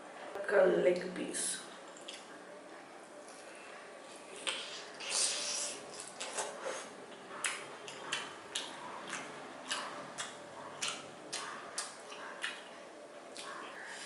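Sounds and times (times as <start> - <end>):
person chewing with wet smacking: 1.9 - 2.4, 3.3 - 14.0.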